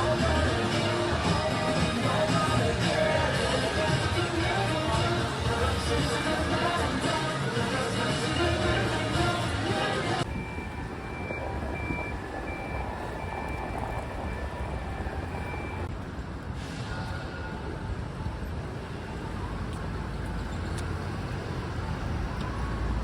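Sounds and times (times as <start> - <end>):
traffic rumble: 0.0 - 23.0
high electronic beep: 10.2 - 15.9.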